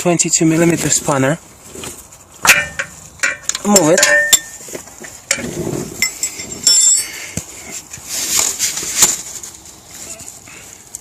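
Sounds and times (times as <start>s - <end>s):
rustling handling noise: 0.0s - 11.0s
spanner clinking and scraping metal: 2.4s - 4.7s, 5.3s - 7.4s.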